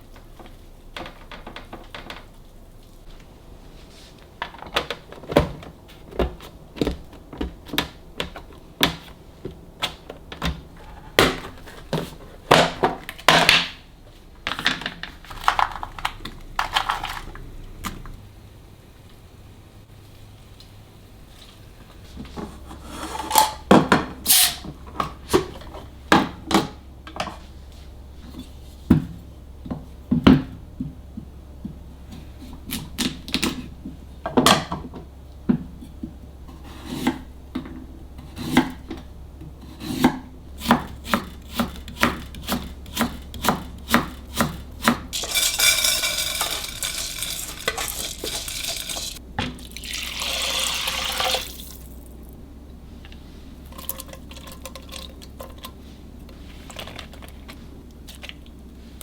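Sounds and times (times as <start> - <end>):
tap water running: 43.3 - 52.2
kitchenware knocks and clinks: 44.9 - 49.6.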